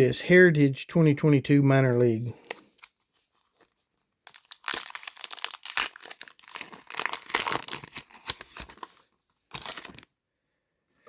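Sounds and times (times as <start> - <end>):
wrapper tearing and crinkling: 4.2 - 10.1.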